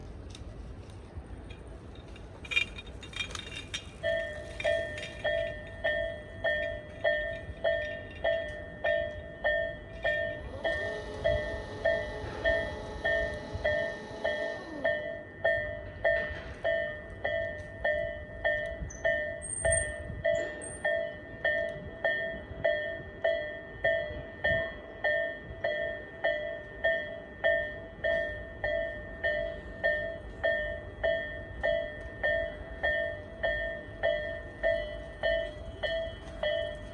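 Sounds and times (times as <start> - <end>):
level crossing warning bell: 1.5 - 36.9.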